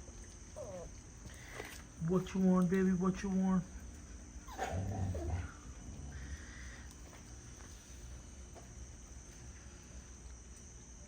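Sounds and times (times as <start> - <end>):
puppy whining: 0.5 - 1.0, 4.4 - 6.3.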